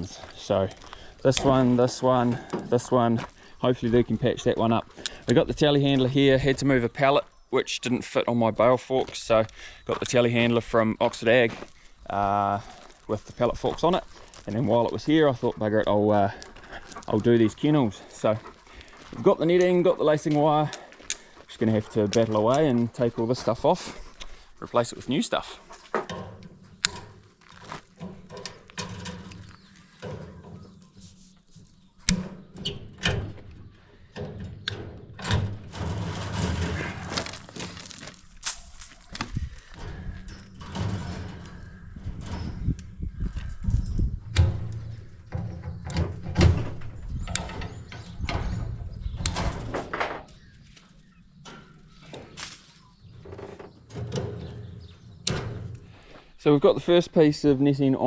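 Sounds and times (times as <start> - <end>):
wire mesh rattling against frame: 26.1 - 30.7, 34.2 - 50.3
wire mesh knocking and rattling: 34.2 - 42.8.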